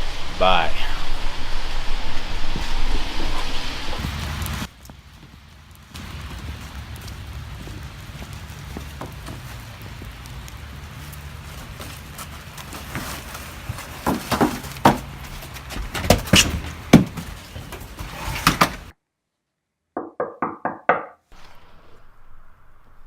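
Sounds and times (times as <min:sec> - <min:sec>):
background noise: 0:00.0 - 0:23.0
thumps and rustles: 0:11.5 - 0:18.9
knocks on a door: 0:20.0 - 0:21.2.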